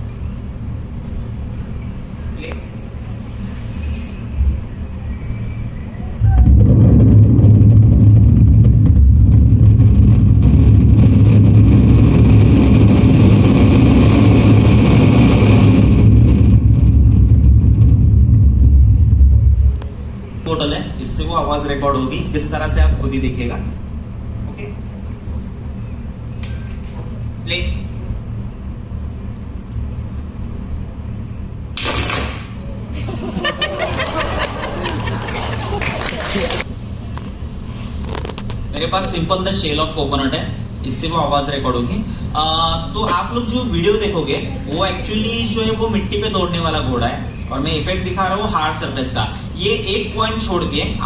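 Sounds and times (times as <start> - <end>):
low engine-like rumble: 0.0 - 31.8, 32.4 - 51.0
hiss: 3.1 - 4.4.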